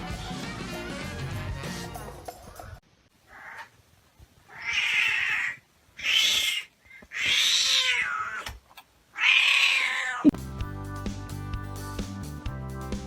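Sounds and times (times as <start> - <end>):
cat meowing: 3.3 - 3.7, 4.5 - 8.5, 9.1 - 10.3.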